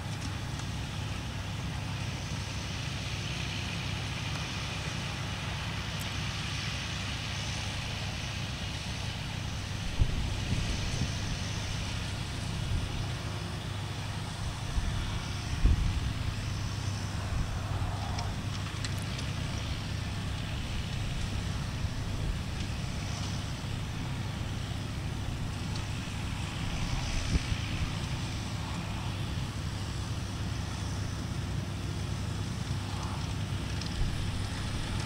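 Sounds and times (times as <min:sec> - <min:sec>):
harvester engine drone: 0:00.0 - 0:35.0
wind noise on microphone: 0:09.1 - 0:13.4, 0:14.0 - 0:18.6, 0:19.6 - 0:29.4.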